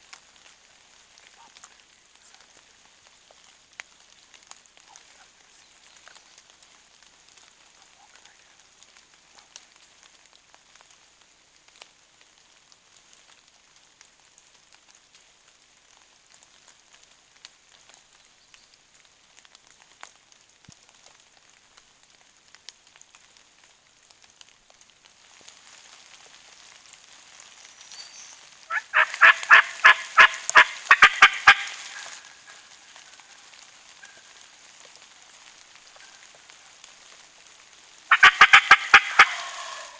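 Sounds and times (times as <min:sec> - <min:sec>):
light rain patter: 0:00.0 - 0:39.9
turkey gobbling: 0:28.7 - 0:34.4, 0:38.1 - 0:39.9.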